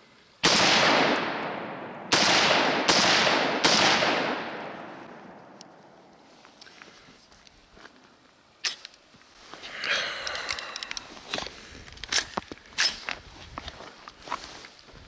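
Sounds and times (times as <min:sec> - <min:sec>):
gunshots with long echo: 0:00.4 - 0:06.1.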